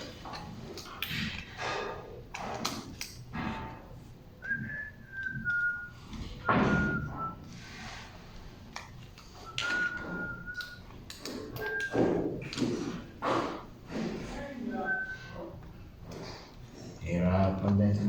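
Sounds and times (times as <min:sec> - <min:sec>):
person whistling: 0:04.4 - 0:07.5, 0:09.4 - 0:10.8, 0:11.6 - 0:12.1, 0:14.7 - 0:15.4
handling knocks and thunks: 0:06.4 - 0:07.4.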